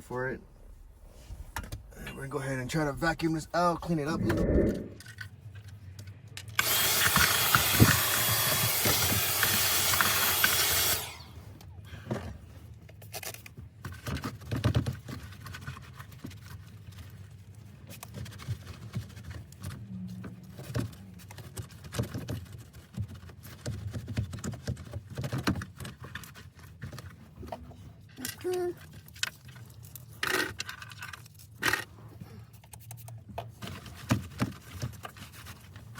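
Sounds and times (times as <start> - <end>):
vacuum cleaner whining: 6.6 - 11.5.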